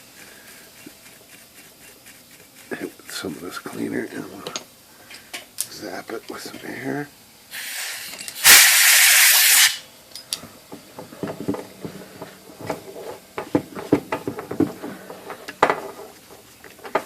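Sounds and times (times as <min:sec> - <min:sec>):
compressed air blast hissing: 0:07.5 - 0:09.9.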